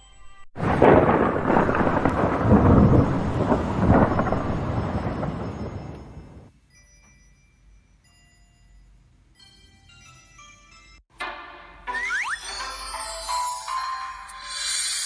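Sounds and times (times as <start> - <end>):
rain: 0.6 - 6.5
thunder rumbling: 0.6 - 6.5.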